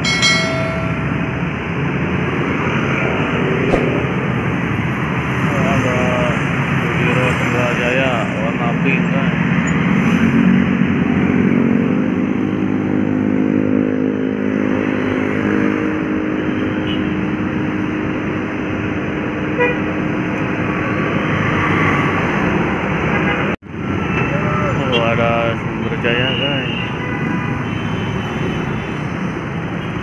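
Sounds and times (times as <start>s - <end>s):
bus engine humming: 0.0s - 7.0s
roadside traffic noise: 0.0s - 30.0s.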